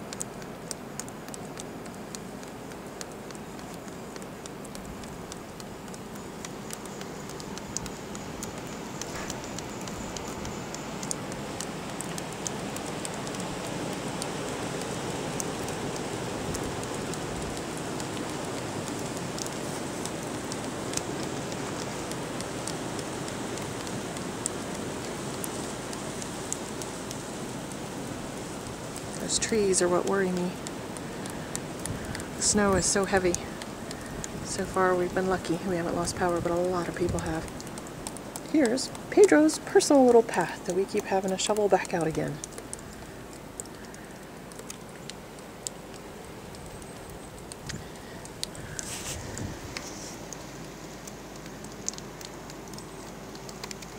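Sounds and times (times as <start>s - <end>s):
faint scattered ticks: 0.0s - 53.9s
blizzard wind hissing: 47.7s - 50.3s.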